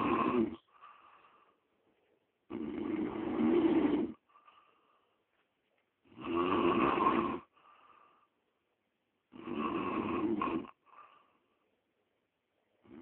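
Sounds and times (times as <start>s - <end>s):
man snoring loudly: 0.0s - 0.6s, 2.5s - 4.2s, 6.1s - 7.5s, 9.3s - 10.8s
faint breath sound: 0.0s - 2.3s, 3.8s - 5.6s, 7.4s - 8.7s, 10.7s - 11.8s.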